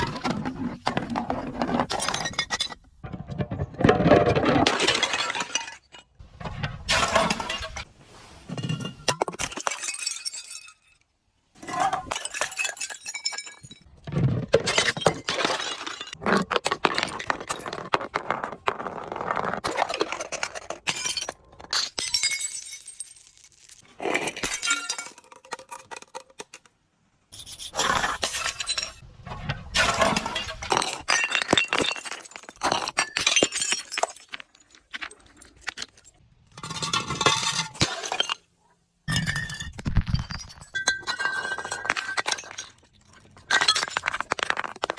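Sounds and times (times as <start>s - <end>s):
glass bottles breaking and crunching: 1.7s - 7.9s, 8.5s - 18.1s, 19.6s - 26.5s, 27.8s - 29.0s, 29.7s - 44.9s.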